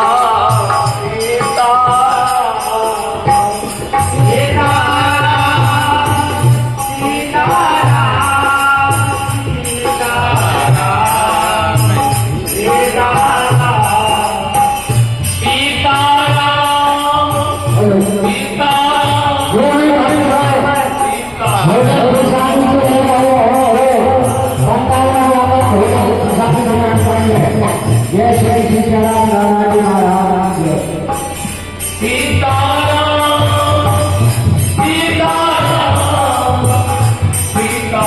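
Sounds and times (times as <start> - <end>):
harmonium melody: 0.0 - 38.0
jingling hand cymbals: 0.0 - 38.0
steady drum beat: 0.0 - 38.0.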